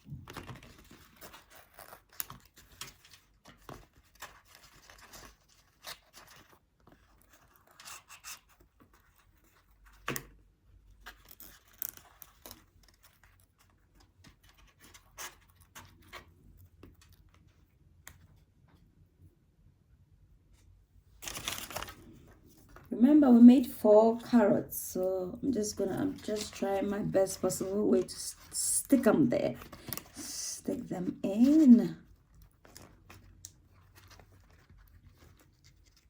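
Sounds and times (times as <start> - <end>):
small taps and scratches: 0.0 - 18.9
paper rustling: 0.1 - 10.2, 20.6 - 23.0, 25.4 - 36.0.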